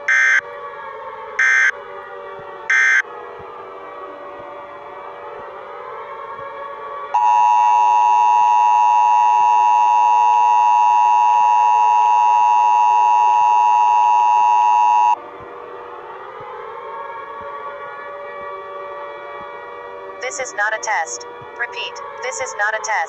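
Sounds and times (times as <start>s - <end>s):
siren wailing: 0.0s - 23.0s
two-tone alert beep: 2.7s - 3.0s.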